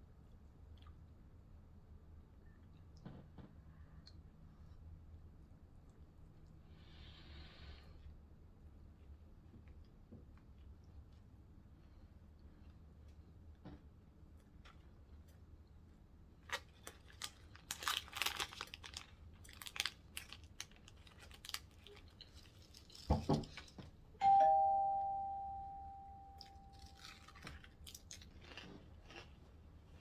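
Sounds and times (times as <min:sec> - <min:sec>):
wrapper crinkling: 0:16.4 - 0:23.8, 0:26.4 - 0:28.7
doorbell chime: 0:24.2 - 0:27.0.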